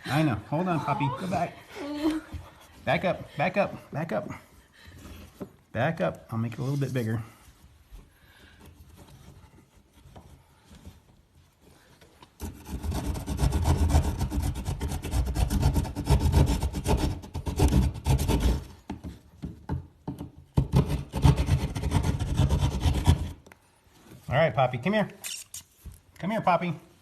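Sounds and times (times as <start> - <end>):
rough rasping and scraping strokes: 12.4 - 18.7.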